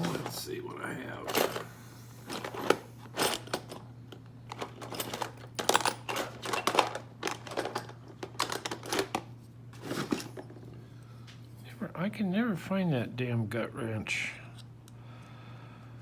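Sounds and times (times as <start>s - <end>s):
hand tools clicking and clattering: 1.2s - 10.6s.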